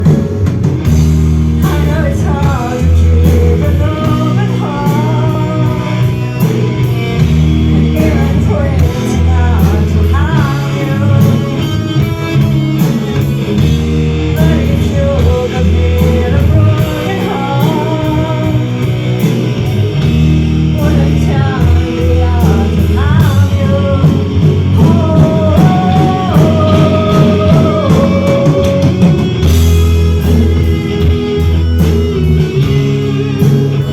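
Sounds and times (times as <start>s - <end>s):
bass guitar: 0.0s - 33.9s
electric guitar: 0.0s - 33.9s
loud rock music: 0.0s - 33.9s.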